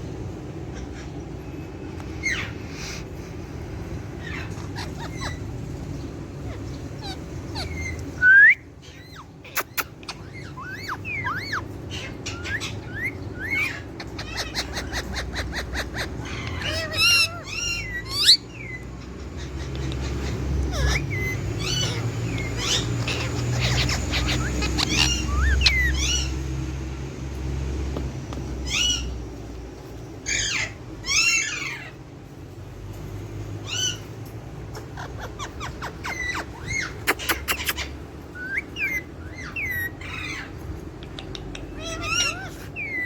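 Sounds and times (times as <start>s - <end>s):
parakeets chirping and squawking: 0.0s - 43.0s
loud sharp parakeet calls: 0.4s - 27.8s, 28.5s - 29.4s, 30.2s - 32.1s, 33.6s - 43.0s.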